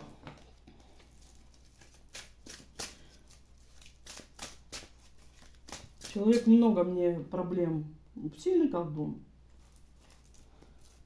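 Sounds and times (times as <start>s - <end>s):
cards rustling and flicking: 0.0s - 6.6s.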